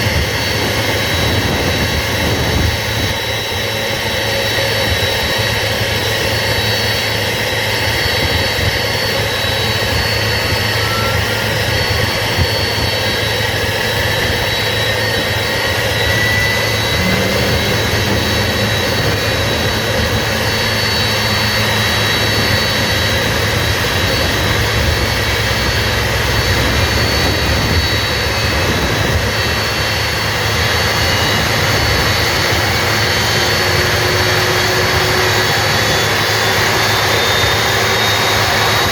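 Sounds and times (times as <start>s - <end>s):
jet engine roar with high whine: 0.0s - 38.9s
tones rising in pitch: 10.1s - 28.5s.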